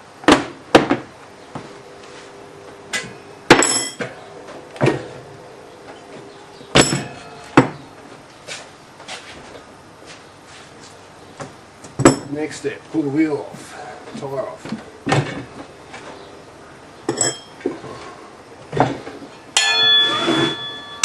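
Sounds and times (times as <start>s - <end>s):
metal clanks and knocks: 5.9s - 7.8s, 12.0s - 12.3s, 17.1s - 18.0s.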